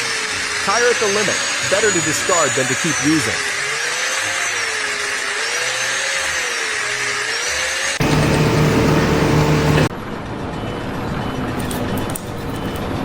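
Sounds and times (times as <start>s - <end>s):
machine hiss with whine: 8.0s - 9.9s
steady machine hum: 8.0s - 9.9s.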